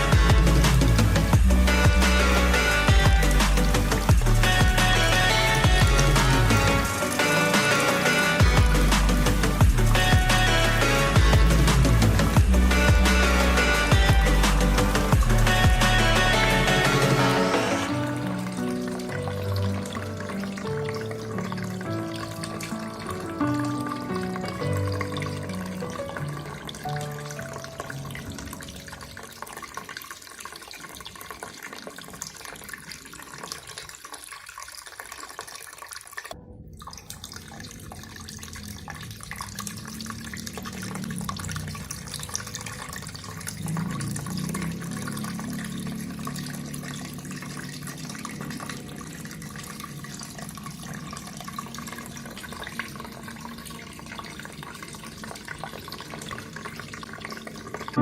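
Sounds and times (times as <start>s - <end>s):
water splashing in waterfall: 38.5s - 58.0s.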